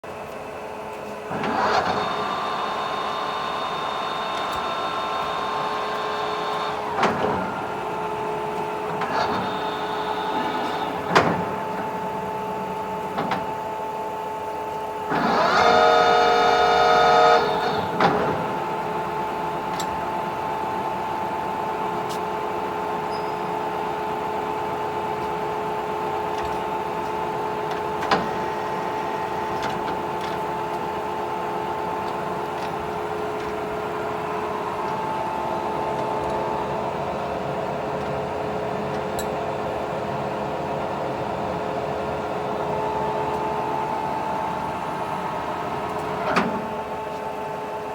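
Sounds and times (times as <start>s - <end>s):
lathe geared drive whine: 0.5s - 47.9s.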